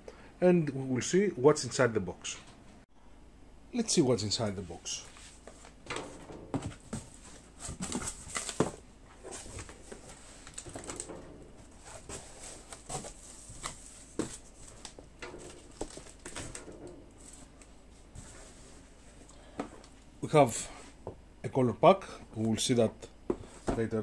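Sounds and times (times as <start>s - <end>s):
packaging rustling and clicking: 5.5s - 11.1s, 11.8s - 17.7s.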